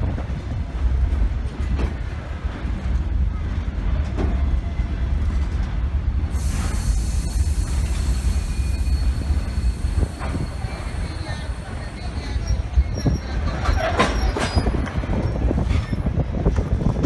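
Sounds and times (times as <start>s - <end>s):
train wheels rumbling on rails: 0.0s - 17.0s
hiss: 6.3s - 12.4s.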